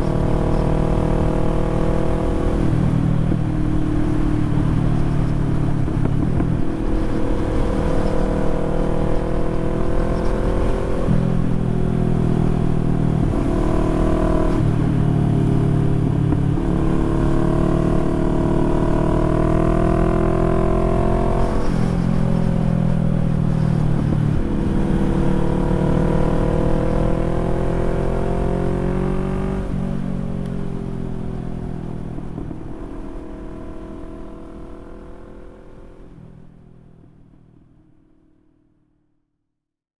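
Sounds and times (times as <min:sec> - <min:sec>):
motorcycle engine shifting gears: 0:00.0 - 0:31.2.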